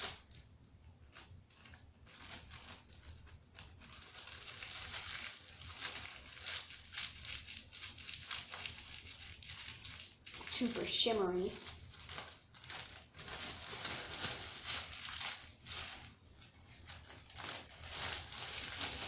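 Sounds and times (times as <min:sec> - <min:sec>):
packaging crinkling and rustling: 0:00.0 - 0:19.0.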